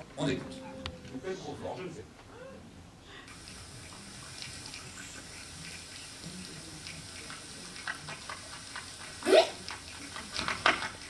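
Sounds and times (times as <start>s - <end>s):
rain sound effect hiss: 3.3s - 11.0s.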